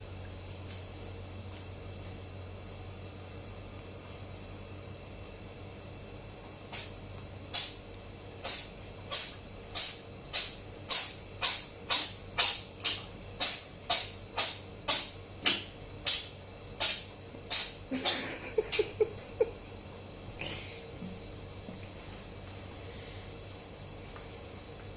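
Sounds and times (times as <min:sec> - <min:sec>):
cat sneezing: 0:08.4 - 0:15.1, 0:16.8 - 0:19.0.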